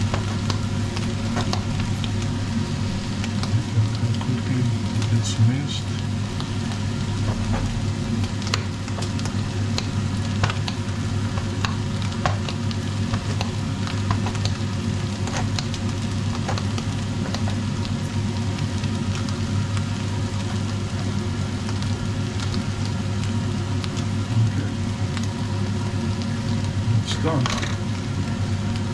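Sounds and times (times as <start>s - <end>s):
low hum: 0.0s - 12.2s
meat sizzling in a pot: 0.0s - 28.9s.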